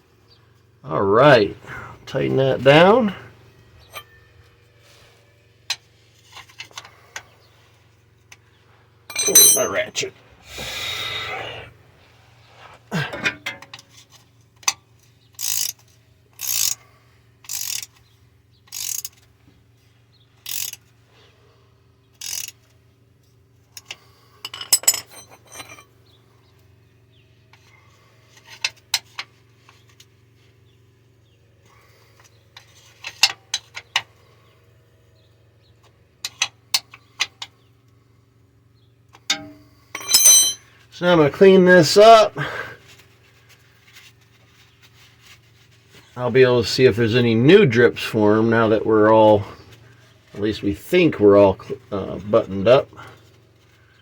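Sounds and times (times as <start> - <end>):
metal tools clinking: 9.1 - 10.1, 23.8 - 25.9, 39.3 - 40.7
hand ratchet clicking: 15.4 - 15.8, 16.4 - 16.8, 17.4 - 18.0, 18.7 - 19.2, 20.4 - 20.9, 22.2 - 22.6.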